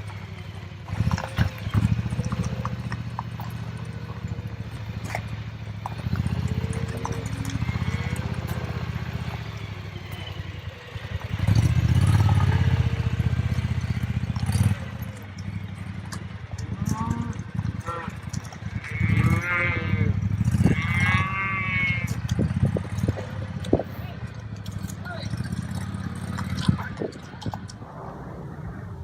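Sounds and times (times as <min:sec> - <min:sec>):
cattle mooing: 0:00.9 - 0:10.3, 0:16.6 - 0:23.8
low rumble: 0:26.5 - 0:29.0.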